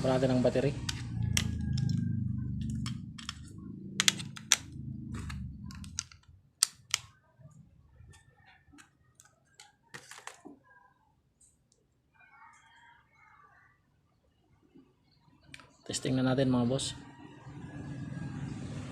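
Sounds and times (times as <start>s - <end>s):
low hum: 0.0s - 6.4s
plastic clicks of batteries fitted: 2.7s - 3.4s, 5.2s - 7.1s.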